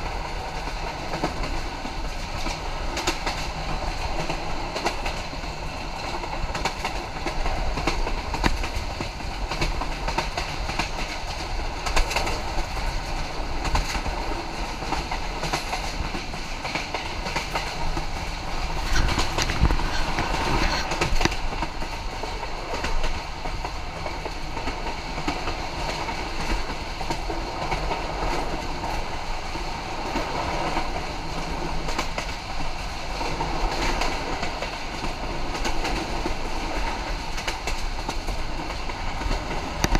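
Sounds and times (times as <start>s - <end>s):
wheels clacking over rail joints: 0.0s - 29.3s
train rumbling: 0.0s - 39.9s.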